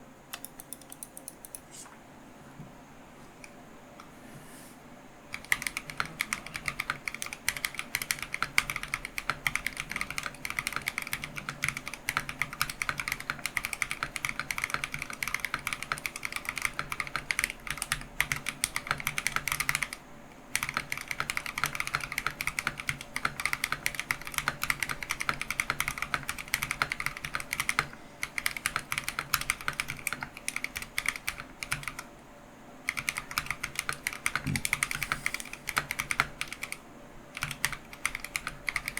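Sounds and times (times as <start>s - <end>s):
mechanical keyboard typing: 0.3s - 1.6s, 5.3s - 32.1s, 32.9s - 36.8s, 37.4s - 38.9s.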